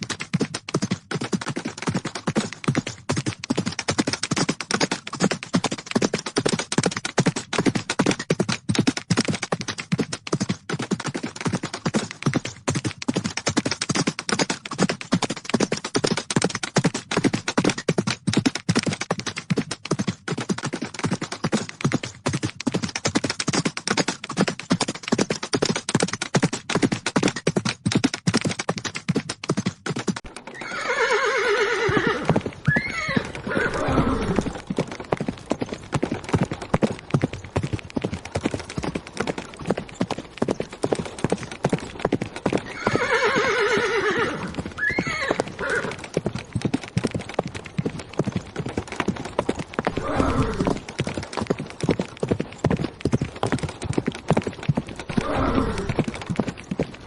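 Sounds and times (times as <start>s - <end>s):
horses galloping hoofbeats: 0.0s - 57.0s
horse neighing: 30.5s - 34.6s, 42.7s - 46.0s, 49.9s - 50.8s, 55.1s - 56.0s.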